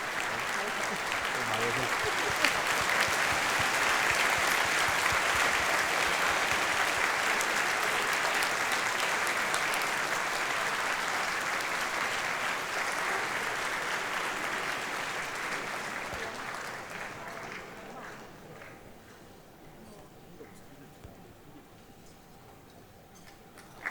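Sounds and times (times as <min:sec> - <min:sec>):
audience applauding: 0:00.0 - 0:18.8.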